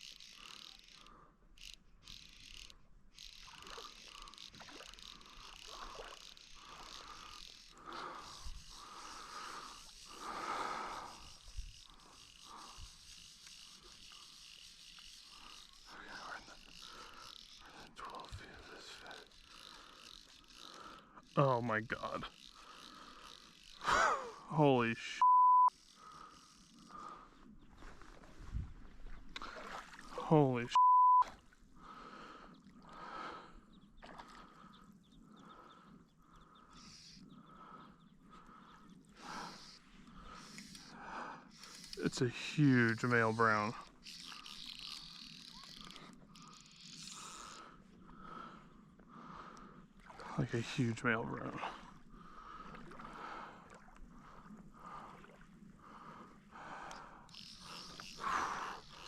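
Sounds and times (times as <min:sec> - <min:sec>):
person breathing hard: 0:06.6 - 0:13.0.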